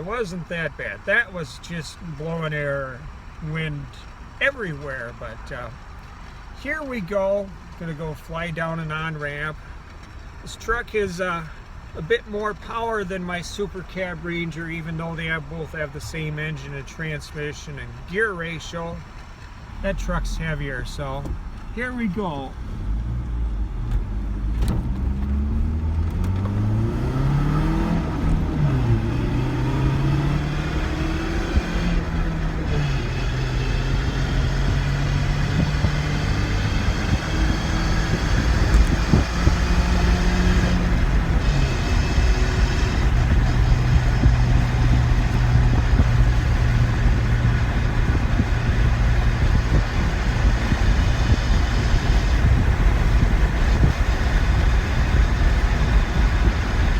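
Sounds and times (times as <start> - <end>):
pickup engine accelerating: 0.0 - 56.9
road and wind noise: 0.0 - 56.9.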